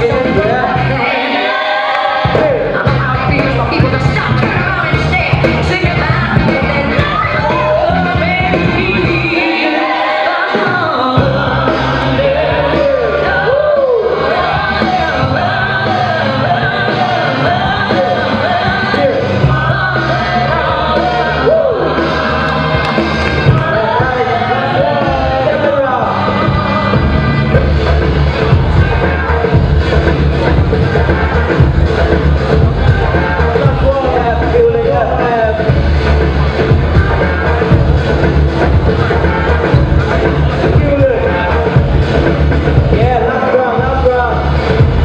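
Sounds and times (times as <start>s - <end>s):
heavy bass beat: 0.0s - 1.0s, 2.0s - 9.8s, 10.5s - 45.0s
sung vocal: 0.0s - 35.8s.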